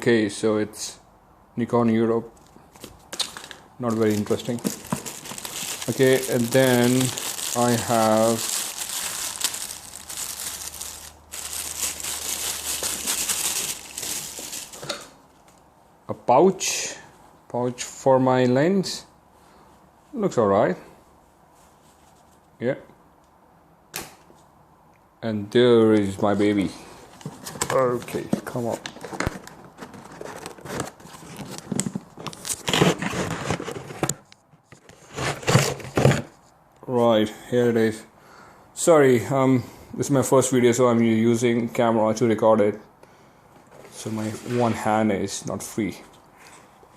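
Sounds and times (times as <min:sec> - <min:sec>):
packaging crinkling and rustling: 0:02.8 - 0:15.6, 0:27.1 - 0:36.4.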